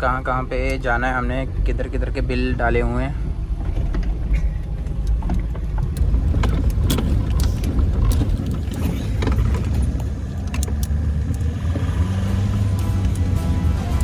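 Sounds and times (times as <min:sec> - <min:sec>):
truck engine and road rumble: 0:00.0 - 0:14.0
short clicks and rattles: 0:03.7 - 0:14.0.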